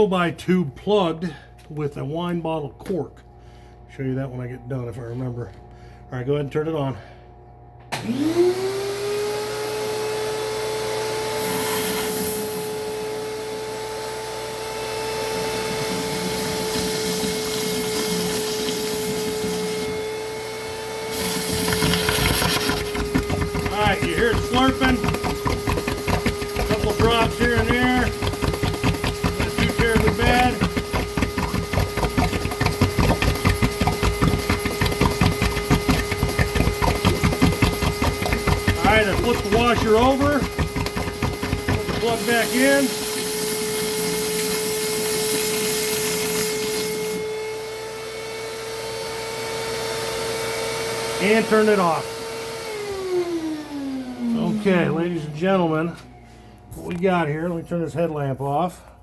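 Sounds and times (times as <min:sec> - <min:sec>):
shop vac motor whine: 0:00.0 - 0:58.0
vacuum slurping: 0:15.1 - 0:46.9, 0:52.8 - 0:56.2.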